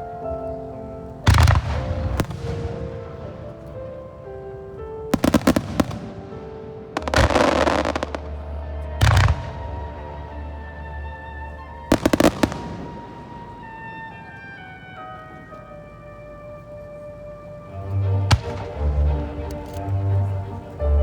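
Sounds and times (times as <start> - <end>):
recorded music: 0.0 - 21.0
fireworks bangs: 1.3 - 3.7, 5.1 - 10.5, 11.9 - 14.6, 18.3 - 19.4
fireworks crackling burst: 1.3 - 3.7, 5.2 - 10.4, 11.9 - 14.6, 18.3 - 19.1
deep firework boom: 9.0 - 10.1.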